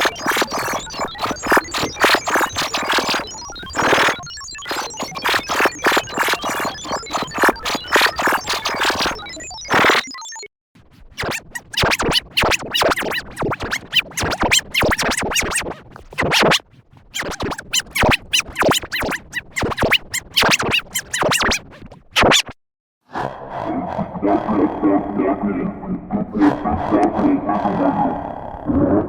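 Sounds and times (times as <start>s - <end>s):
glitchy stuttering music: 0.0s - 22.6s
record scratch effects: 0.0s - 22.6s.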